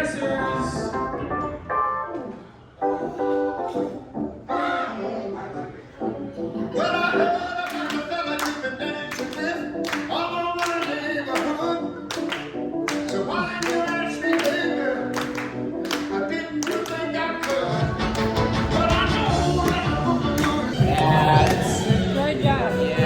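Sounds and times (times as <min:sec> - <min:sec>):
song over speakers: 0:00.0 - 0:23.0
people clapping along: 0:07.6 - 0:23.0.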